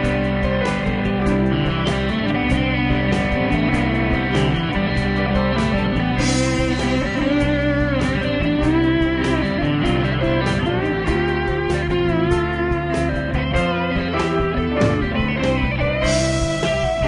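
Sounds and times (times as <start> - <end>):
guitar-led instrumental music: 0.0 - 17.0
steady drum beat: 0.0 - 17.0.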